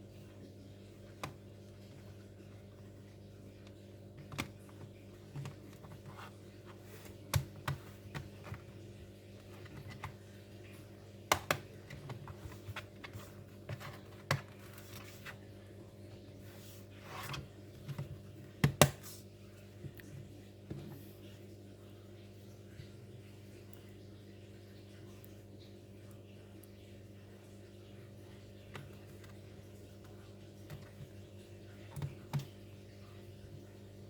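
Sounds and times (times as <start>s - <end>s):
plastic case clicks and knocks: 11.3s - 12.8s, 17.9s - 19.0s.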